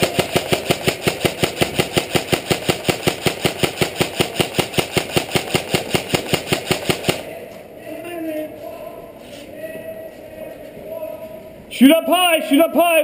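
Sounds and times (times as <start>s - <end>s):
airsoft gun full-auto burst: 0.0s - 7.4s.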